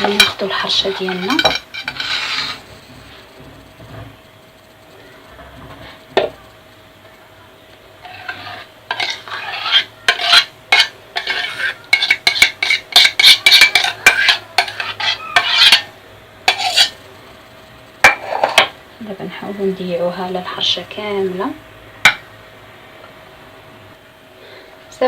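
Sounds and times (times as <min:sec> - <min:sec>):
utensil scraping a saucepan: 0:00.0 - 0:04.2, 0:08.0 - 0:17.0, 0:18.0 - 0:18.8.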